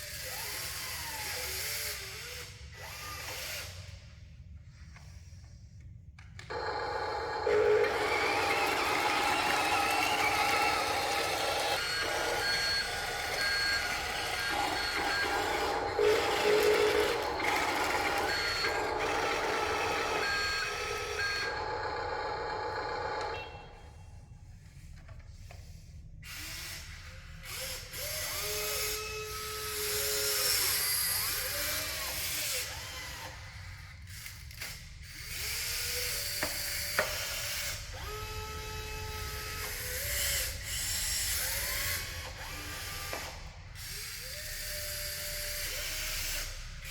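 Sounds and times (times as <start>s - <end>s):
small electric motors whirring: 6.4s - 23.4s, 26.2s - 46.9s.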